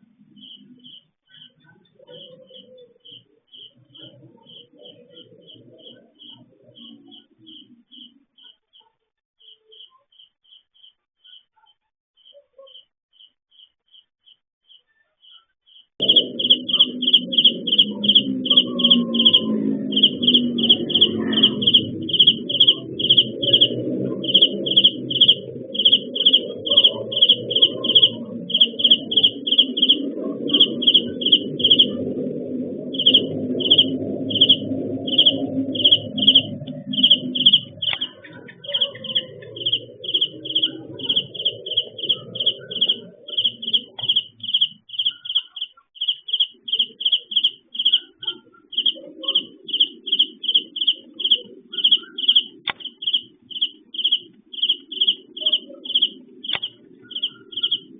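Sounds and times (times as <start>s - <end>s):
high-pitched chirps: 15.3s - 57.9s.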